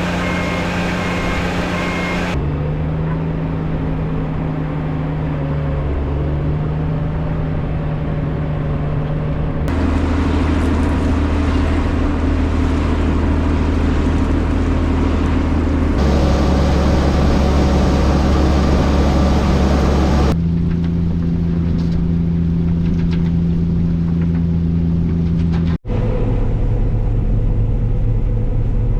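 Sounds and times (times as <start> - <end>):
threshing machinery rushing: 0.0 - 2.4, 16.0 - 20.4
combine harvester engine hum: 0.0 - 28.9.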